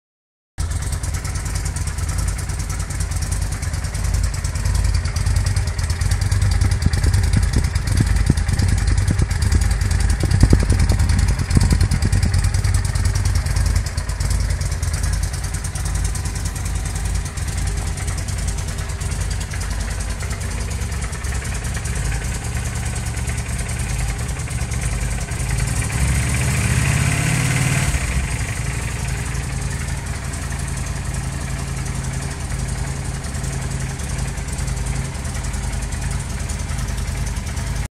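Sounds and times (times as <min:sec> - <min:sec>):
motorcycle engine idling and revving: 0:00.6 - 0:37.9.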